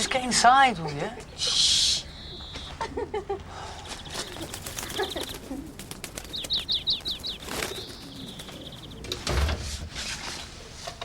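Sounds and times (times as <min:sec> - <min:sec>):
bird chirping: 0:00.0 - 0:03.0, 0:03.6 - 0:09.4.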